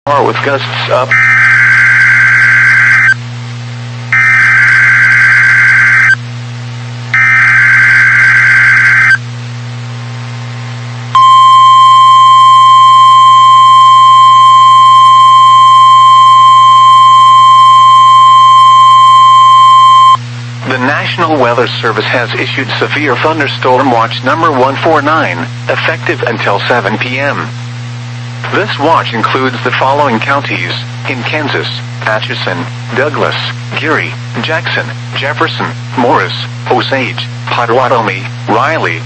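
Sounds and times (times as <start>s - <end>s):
harsh buzzing data burst: 1.1s - 3.2s, 4.2s - 6.2s, 7.2s - 9.2s
steady warning alarm tone: 1.1s - 3.2s, 4.1s - 6.2s, 7.1s - 9.2s, 11.2s - 20.2s.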